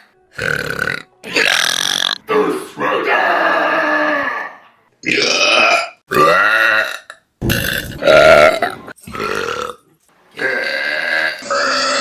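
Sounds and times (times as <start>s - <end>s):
person burping loudly: 0.3s - 2.2s, 5.0s - 9.8s, 10.4s - 12.0s.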